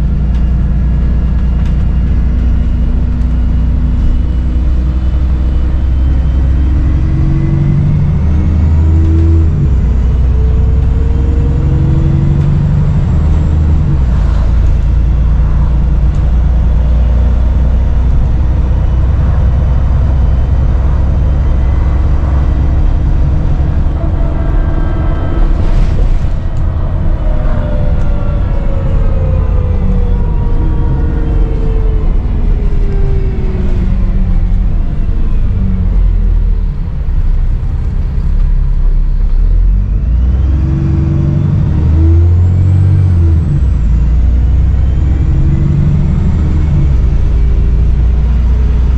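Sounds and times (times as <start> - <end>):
bus engine accelerating: 0.0 - 48.9
high turbo whistle: 18.2 - 35.6.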